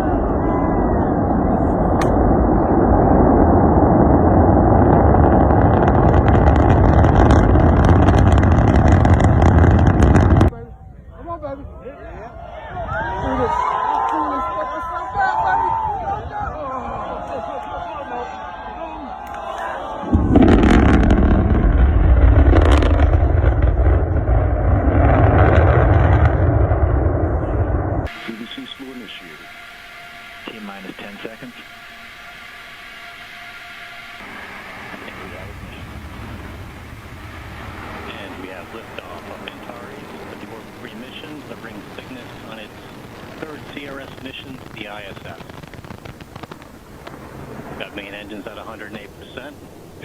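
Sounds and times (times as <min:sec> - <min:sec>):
rocket engines rumbling: 0:00.0 - 0:50.0
crackling: 0:01.2 - 0:10.5, 0:20.0 - 0:50.0.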